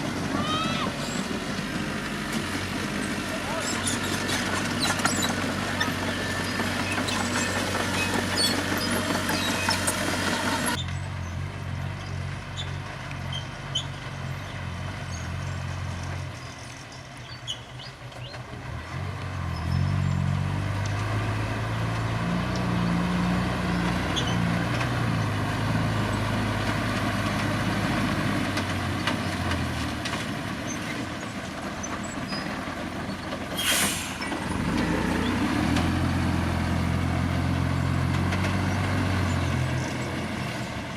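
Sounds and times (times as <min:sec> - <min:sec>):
diesel truck engine droning: 0:00.0 - 0:40.9
air brake hiss: 0:33.6 - 0:34.4.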